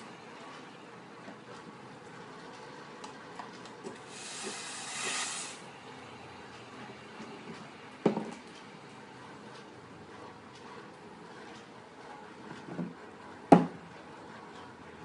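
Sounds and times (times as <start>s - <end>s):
steam wand hissing: 4.1s - 5.7s.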